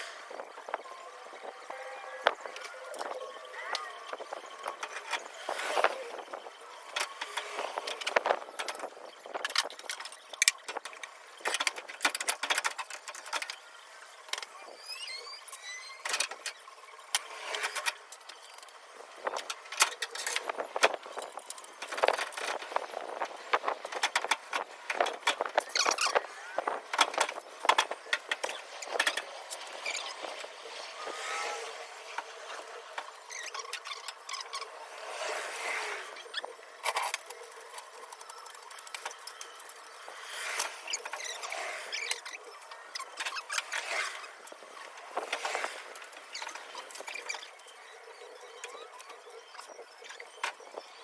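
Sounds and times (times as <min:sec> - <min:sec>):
short rising squeaks: 0:14.7 - 0:16.1, 0:27.9 - 0:36.8.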